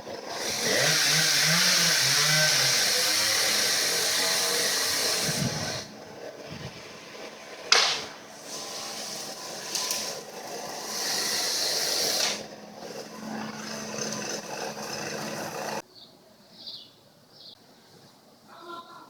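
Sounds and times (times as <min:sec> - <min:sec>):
chainsaw running: 0:00.0 - 0:15.8.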